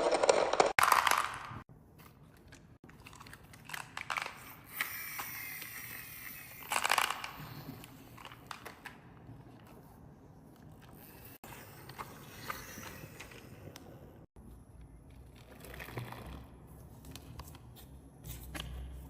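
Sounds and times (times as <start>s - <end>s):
marbles clattering: 0.0s - 1.6s.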